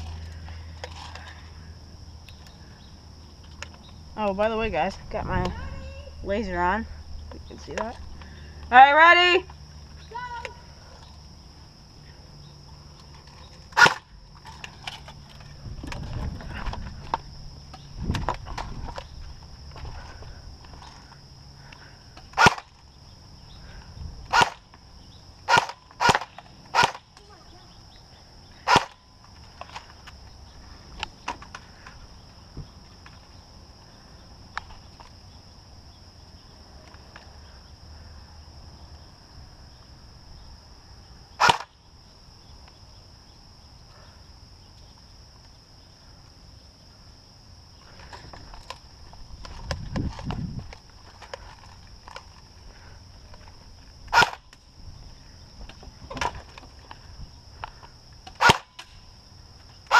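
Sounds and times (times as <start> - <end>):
airsoft gun shots: 13.8 - 14.0, 22.4 - 22.6, 24.3 - 24.6, 25.5 - 27.0, 28.7 - 29.0, 41.4 - 41.7, 54.1 - 54.4, 58.4 - 58.8.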